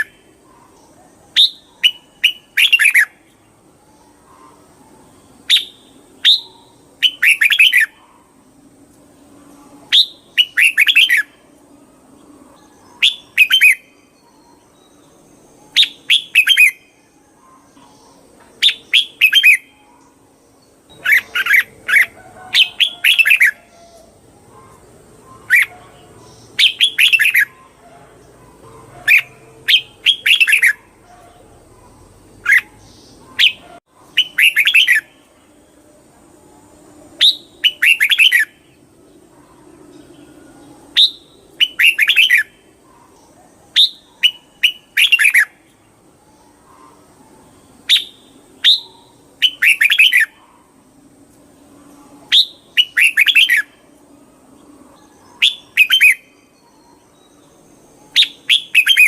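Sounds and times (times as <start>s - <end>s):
bird singing song phrases: 0.0s - 59.0s.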